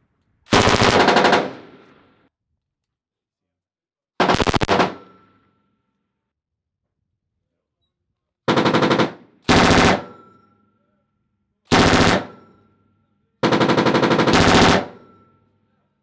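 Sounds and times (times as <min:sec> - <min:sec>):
machine gun bursts: 0:00.5 - 0:01.8, 0:04.2 - 0:05.1, 0:08.5 - 0:10.1, 0:11.7 - 0:12.4, 0:13.4 - 0:15.0.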